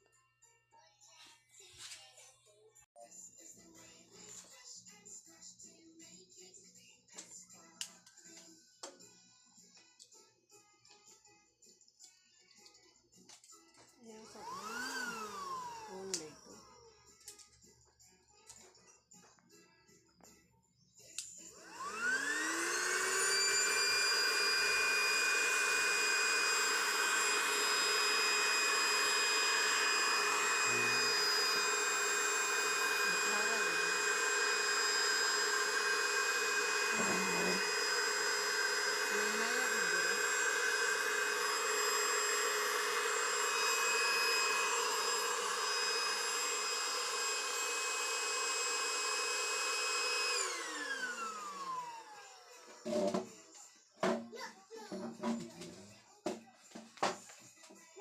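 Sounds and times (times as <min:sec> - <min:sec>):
electric air pump whining: 0:14.3 - 0:16.6, 0:21.6 - 0:53.3.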